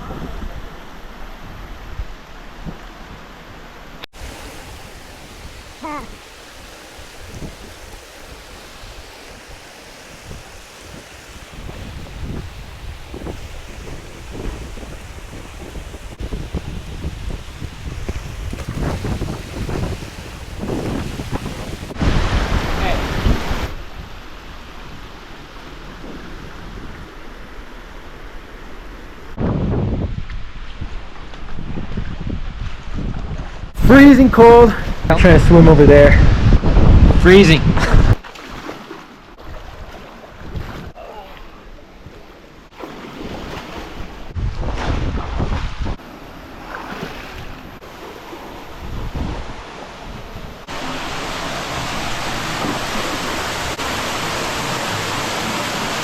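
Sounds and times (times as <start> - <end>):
creek water rushing: 0.9 - 26.6, 46.0 - 56.0
wind buffeting microphone: 4.2 - 25.1, 29.4 - 38.2, 39.4 - 41.0, 43.2 - 46.0, 48.6 - 55.1.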